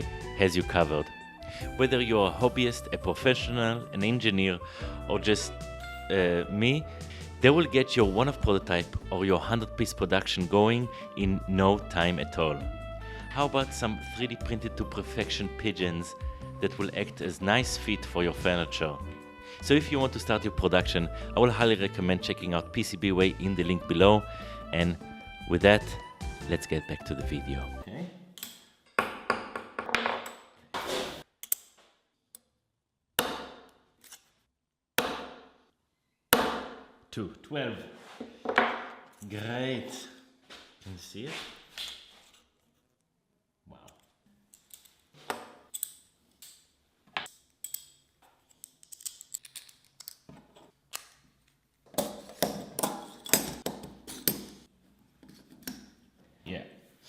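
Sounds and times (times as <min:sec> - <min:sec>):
small hard parts clicking: 0:45.7 - 0:50.3
metallic knocks and clinks: 0:52.1 - 0:54.6.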